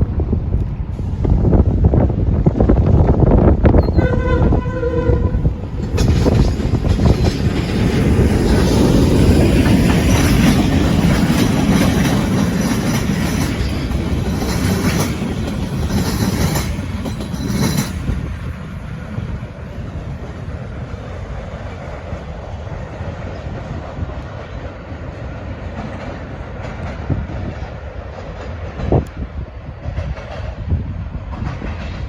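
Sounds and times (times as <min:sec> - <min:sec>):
train wheels rumbling on rails: 0:00.0 - 0:32.0
diesel locomotive horn blasts: 0:03.8 - 0:05.7.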